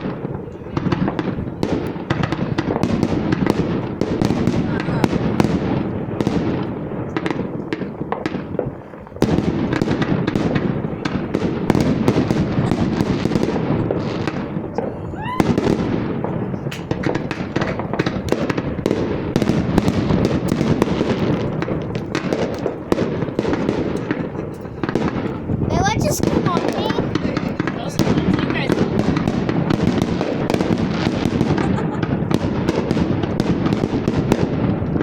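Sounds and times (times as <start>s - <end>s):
fireworks bangs and crackling: 0.0s - 35.0s
rising firework whistle: 14.1s - 16.0s.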